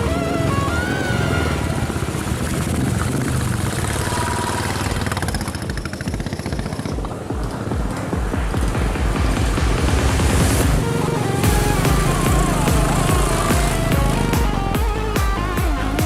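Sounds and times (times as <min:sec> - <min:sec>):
background music: 0:00.0 - 0:03.2, 0:04.4 - 0:16.0
motorcycle engine thumping: 0:02.5 - 0:16.0.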